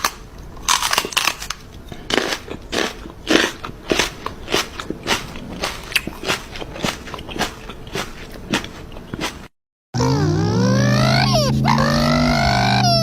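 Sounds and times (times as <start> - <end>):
dog chewing crunchy food: 0.6 - 9.5.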